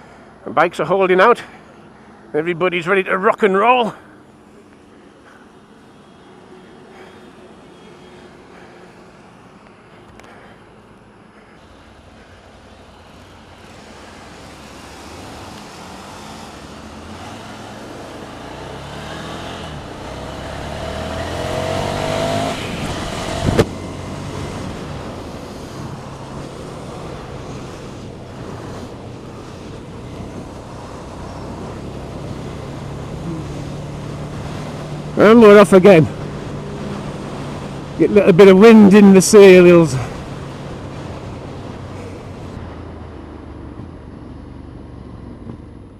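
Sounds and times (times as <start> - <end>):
motorcycle engines pulling away: 11.6 - 45.9.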